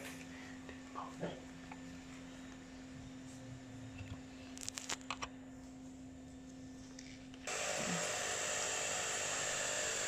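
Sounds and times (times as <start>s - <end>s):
coffee grinder grinding beans: 7.5s - 10.0s.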